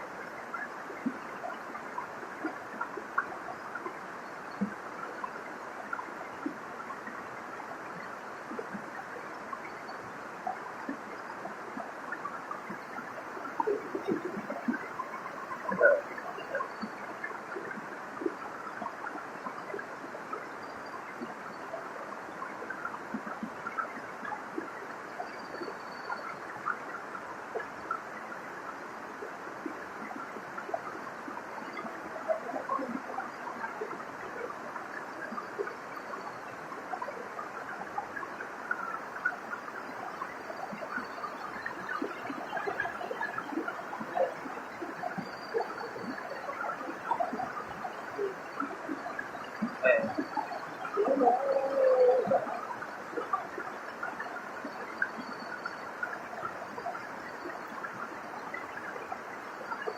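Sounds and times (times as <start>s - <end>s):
faint bird chirps: 12.2s - 24.0s, 30.1s - 59.9s.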